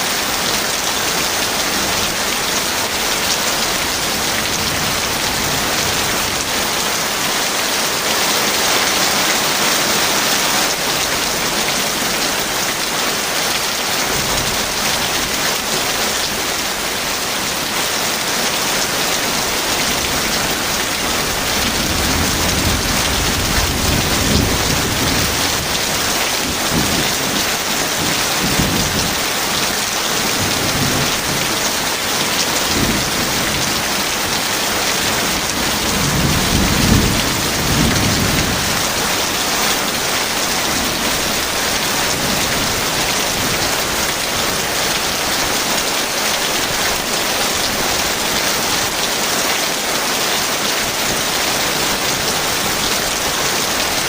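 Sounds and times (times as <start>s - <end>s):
heavy rain falling: 0.0s - 54.0s
low rolling thunder: 21.3s - 27.2s, 35.2s - 38.8s.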